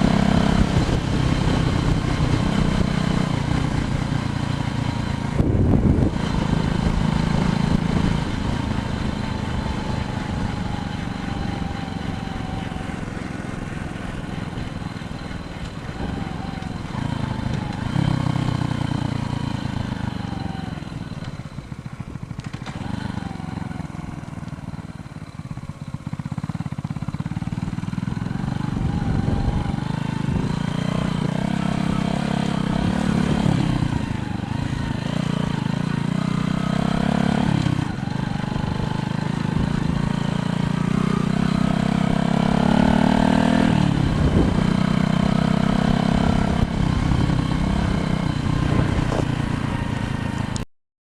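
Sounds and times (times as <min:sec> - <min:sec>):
wind buffeting microphone: 0:00.0 - 0:18.8, 0:27.6 - 0:35.3, 0:42.0 - 0:50.6
bicycle tyre noise on road: 0:00.0 - 0:50.6.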